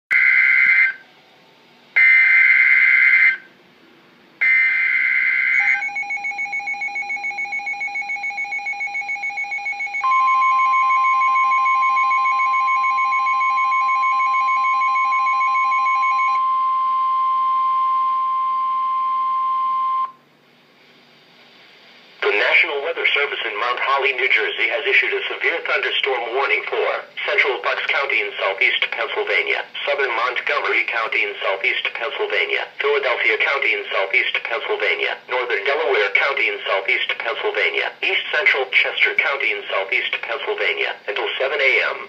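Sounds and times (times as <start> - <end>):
steady warning alarm tone: 0.1 - 1.0, 2.0 - 3.5, 4.4 - 20.2.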